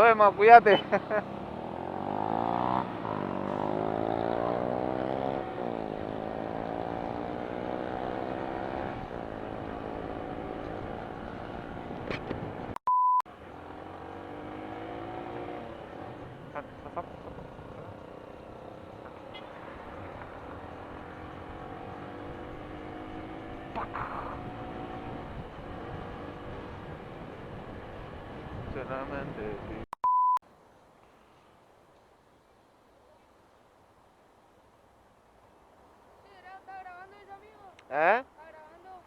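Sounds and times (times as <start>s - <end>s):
motorcycle engine pulling away: 0.4s - 29.8s
short steady beep: 12.8s - 13.3s, 30.0s - 30.4s
wind noise: 23.8s - 29.8s.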